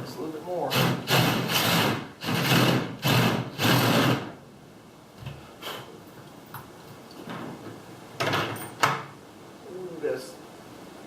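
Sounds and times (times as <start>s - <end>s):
cordless drill boring into wood: 0.7s - 4.3s.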